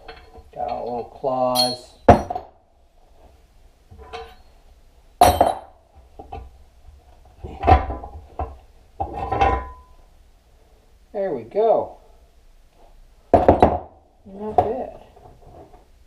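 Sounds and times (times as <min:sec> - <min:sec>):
metal clanks and knocks from tools: 0:00.0 - 0:02.5, 0:03.9 - 0:04.5, 0:05.2 - 0:06.5, 0:07.4 - 0:09.9.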